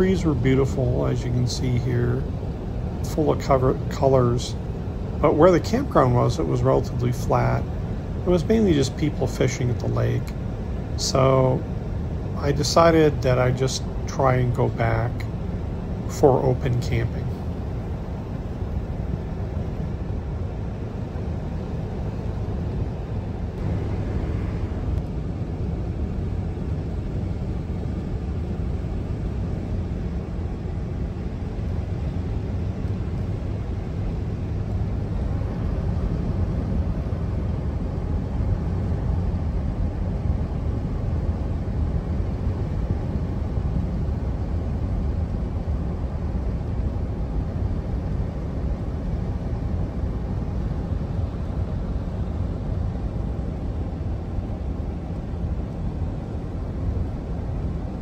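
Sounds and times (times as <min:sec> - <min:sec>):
road and engine noise: 0:00.0 - 0:58.0.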